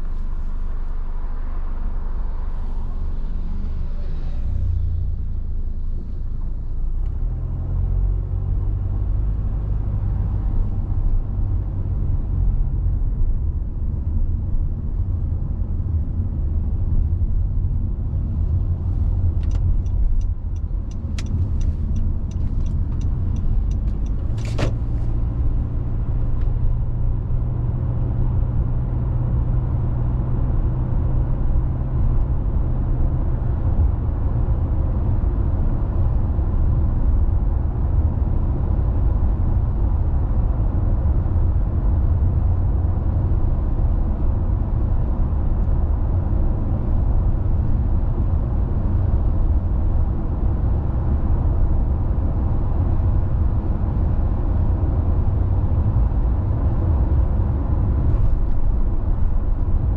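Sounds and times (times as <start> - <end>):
car road and engine rumble: 0.0 - 59.9
light ticks: 19.4 - 24.5.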